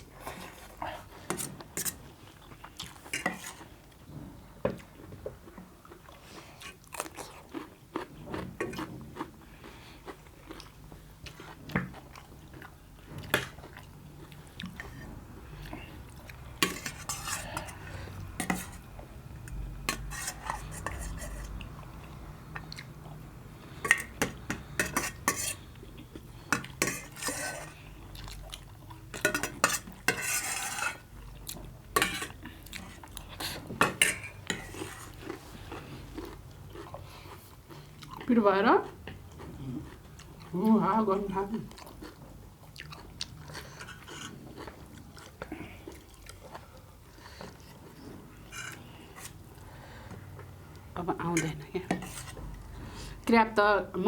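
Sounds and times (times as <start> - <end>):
chewing: 1.9 - 4.0, 4.8 - 18.8, 20.4 - 24.8, 25.5 - 30.0, 31.2 - 40.7, 41.6 - 49.6
cutlery clinking against dishes: 16.6 - 17.8, 23.8 - 25.6, 26.5 - 27.8, 29.2 - 31.0, 32.0 - 32.4, 33.8 - 35.0.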